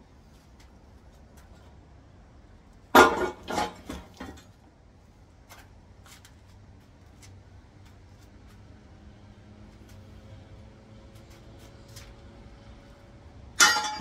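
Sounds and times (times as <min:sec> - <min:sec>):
parts clattering on workbench: 0:03.0 - 0:04.6.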